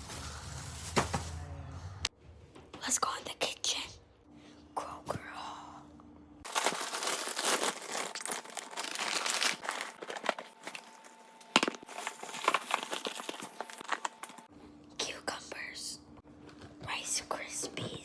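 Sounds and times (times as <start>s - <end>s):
plastic bags rustling: 0.0s - 1.6s, 6.4s - 14.5s.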